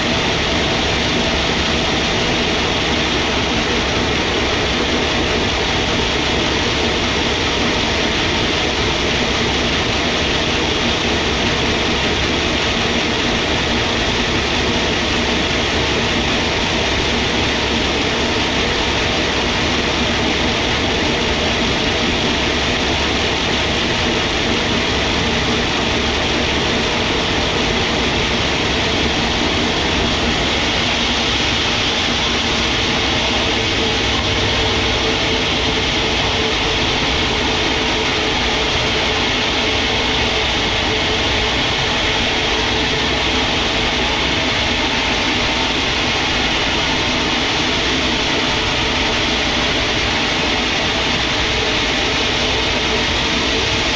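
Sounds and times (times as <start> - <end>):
sawmill machinery running: 0.0 - 53.9.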